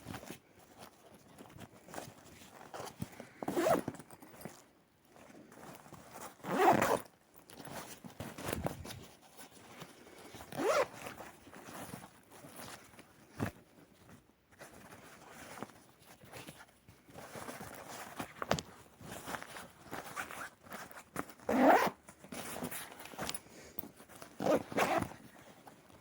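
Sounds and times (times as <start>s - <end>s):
rustling handling noise: 0.0s - 26.0s
bag zipper pulled: 3.5s - 3.9s, 6.4s - 7.1s, 10.5s - 11.0s, 21.5s - 22.0s, 24.4s - 25.2s.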